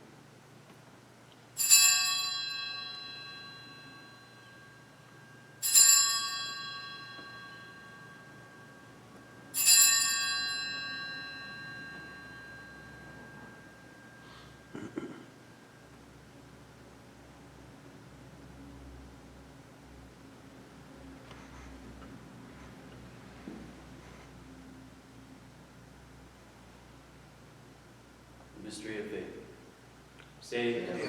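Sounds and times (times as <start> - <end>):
altar bell ringing: 1.6 - 16.3.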